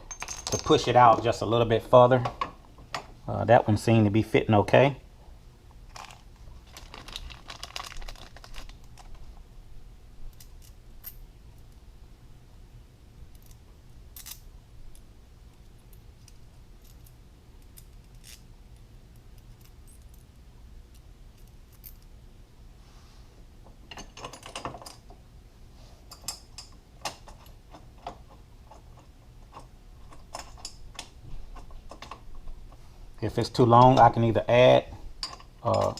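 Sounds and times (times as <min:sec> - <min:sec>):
metallic clicks and clinks: 0:00.1 - 0:01.3, 0:35.2 - 0:35.9.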